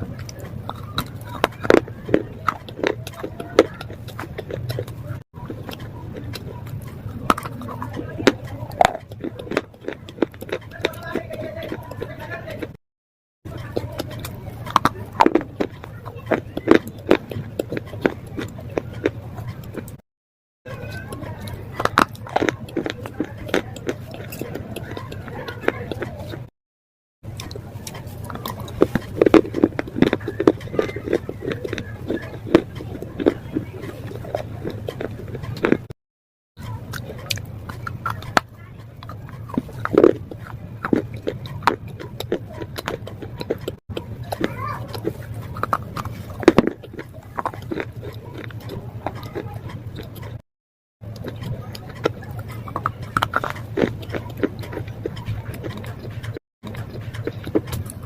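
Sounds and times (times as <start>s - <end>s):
slate being chewed crunching: 0.0s - 12.8s, 13.5s - 20.0s, 20.7s - 26.5s, 27.2s - 36.0s, 36.6s - 50.4s, 51.0s - 58.0s.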